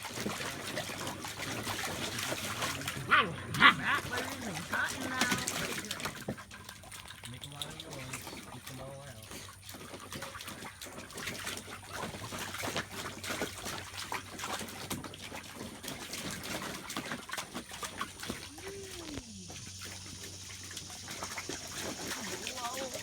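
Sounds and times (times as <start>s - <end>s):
puppy splashing in shallow water: 0.0s - 23.0s
water dripping: 0.0s - 23.0s
puppy vocal sound: 2.6s - 6.1s.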